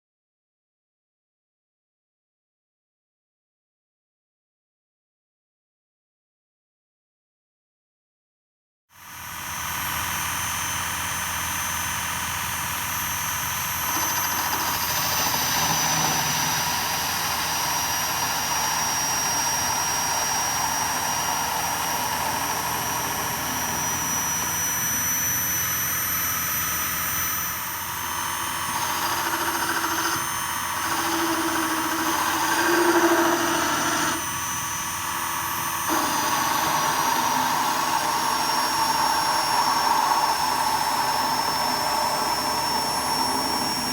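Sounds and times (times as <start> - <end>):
electric machine high whine: 9.0 - 43.9.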